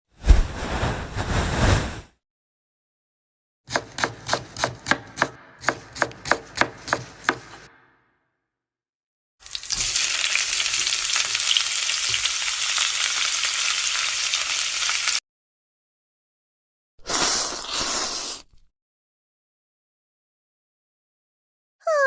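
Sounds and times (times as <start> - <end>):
food sizzling in a frying pan: 9.4 - 15.2.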